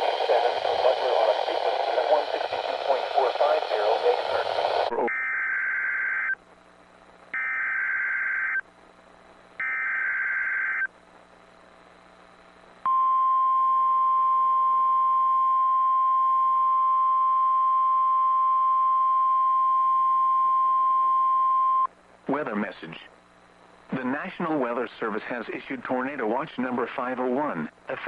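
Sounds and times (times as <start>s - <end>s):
steady warning alarm tone: 9.6s - 10.9s.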